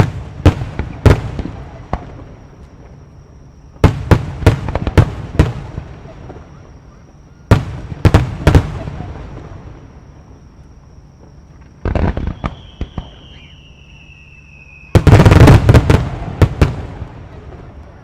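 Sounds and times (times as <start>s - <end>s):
rapid firework bangs: 0.0s - 2.3s, 3.7s - 6.8s, 7.4s - 9.7s, 11.8s - 13.7s, 14.6s - 17.7s
falling firework whistle: 0.0s - 18.0s
firework cracks: 11.6s - 18.0s.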